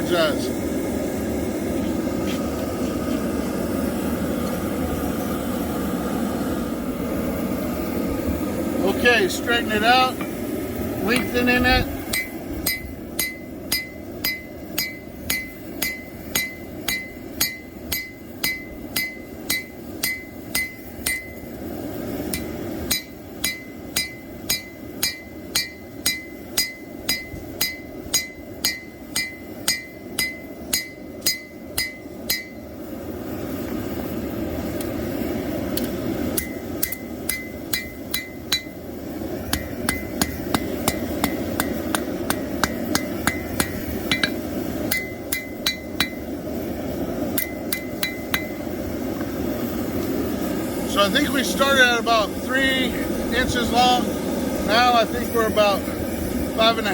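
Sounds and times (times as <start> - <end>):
hammer striking steel on anvil: 12.1 - 21.5, 22.3 - 32.7, 35.8 - 38.8, 39.4 - 46.3, 47.4 - 48.7.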